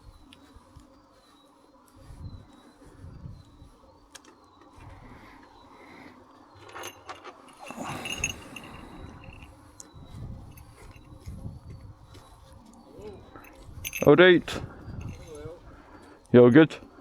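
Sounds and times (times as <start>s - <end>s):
rustling: 6.4s - 9.6s
small bell jingling: 6.5s - 11.7s, 13.0s - 15.7s.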